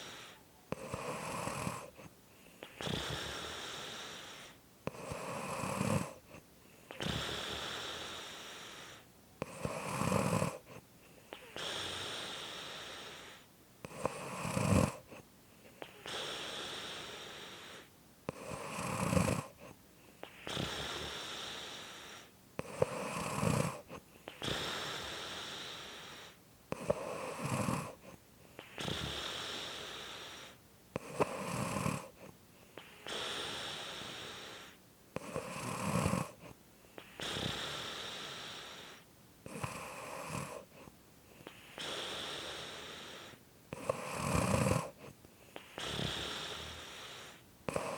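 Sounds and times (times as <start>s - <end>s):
breathy exhale: 0.0s - 0.4s, 36.4s - 39.1s, 40.5s - 43.4s, 44.8s - 47.9s
rattling snore: 0.8s - 2.0s, 2.6s - 6.2s, 6.9s - 10.7s, 13.9s - 15.1s, 15.8s - 19.6s, 20.3s - 22.0s, 22.6s - 28.0s, 28.6s - 32.2s, 32.8s - 40.7s, 41.5s - 47.9s.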